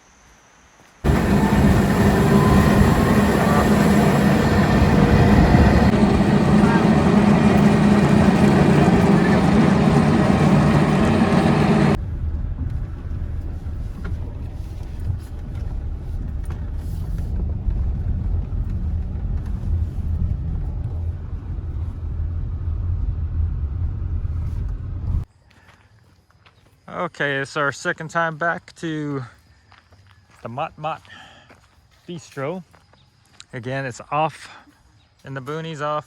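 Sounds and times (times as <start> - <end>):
loud steady rushing noise: 1.0 - 12.0
low rumble of car driving: 1.0 - 25.3.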